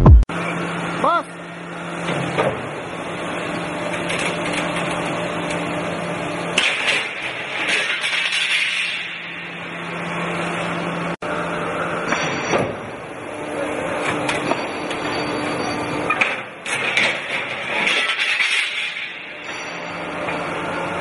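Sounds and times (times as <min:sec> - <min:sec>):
machine hum: 0:00.0 - 0:00.9.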